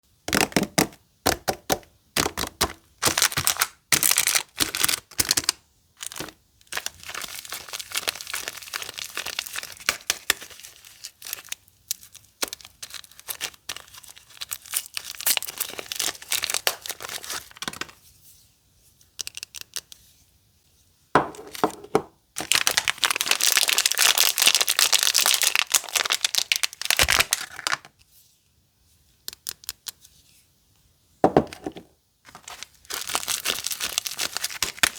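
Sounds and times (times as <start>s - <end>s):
wrappers crinkling and tearing: 2.2s - 18.0s, 22.4s - 27.9s, 32.3s - 34.9s.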